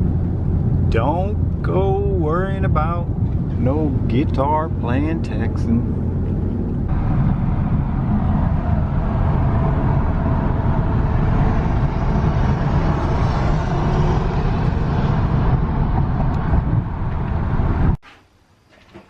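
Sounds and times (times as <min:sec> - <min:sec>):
vehicle road and engine noise: 0:00.0 - 0:18.0.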